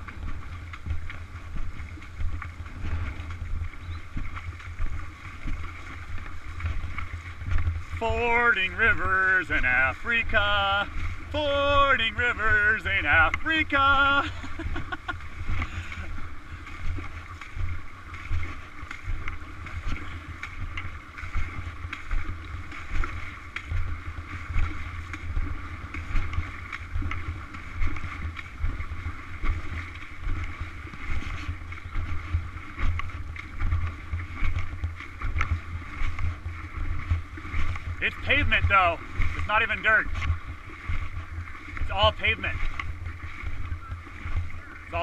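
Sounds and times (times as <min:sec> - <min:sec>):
wind buffeting microphone: 0:00.0 - 0:45.0
fast-flowing river rushing: 0:04.9 - 0:18.8.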